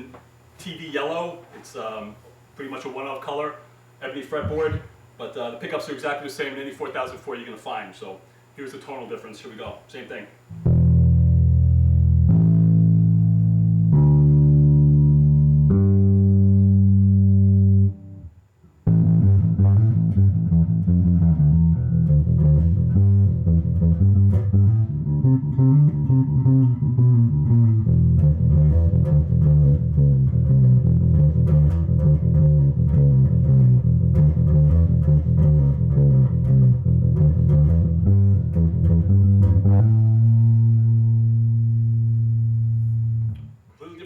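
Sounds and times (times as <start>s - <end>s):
electric bass plucked notes: 4.4s - 4.9s, 10.5s - 43.5s.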